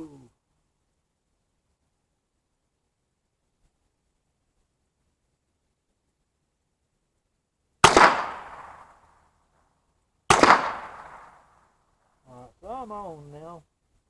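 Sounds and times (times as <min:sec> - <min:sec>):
rifle shots cracking: 0:07.8 - 0:09.1, 0:10.3 - 0:11.6.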